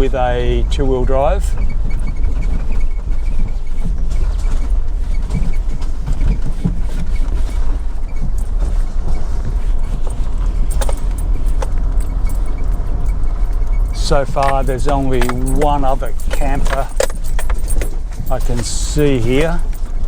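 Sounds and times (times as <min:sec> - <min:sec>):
low rumble of engine and tyres: 0:00.0 - 0:20.0
sharp rattles: 0:00.0 - 0:20.0
loose items jangling: 0:04.4 - 0:20.0.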